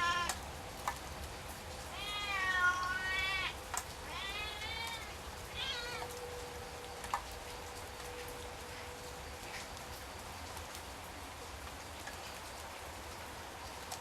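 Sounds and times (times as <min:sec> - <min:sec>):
cat meowing: 0:00.0 - 0:00.4, 0:01.9 - 0:06.2
rain hiss: 0:00.0 - 0:14.0.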